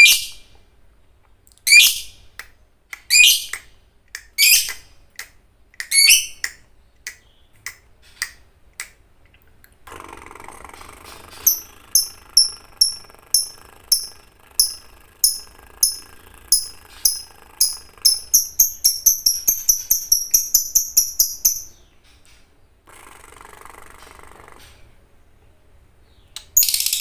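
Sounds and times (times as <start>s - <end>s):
lovebird high chirps: 0.0s - 0.4s, 1.6s - 2.1s, 3.0s - 3.6s, 4.4s - 4.8s, 5.8s - 6.6s, 11.3s - 21.9s, 26.6s - 27.0s.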